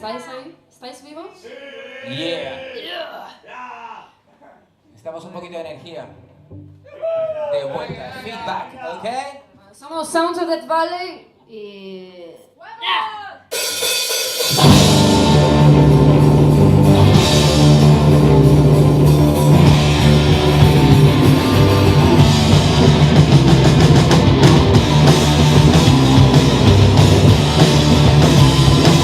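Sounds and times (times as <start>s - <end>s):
drum kit: 13.5s - 29.0s
bass guitar: 14.5s - 29.0s
distorted electric guitar: 14.5s - 29.0s.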